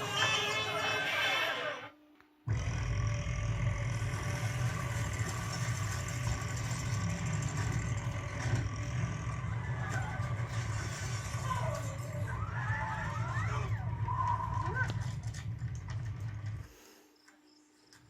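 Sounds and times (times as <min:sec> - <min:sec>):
long low burp: 0:02.5 - 0:10.3.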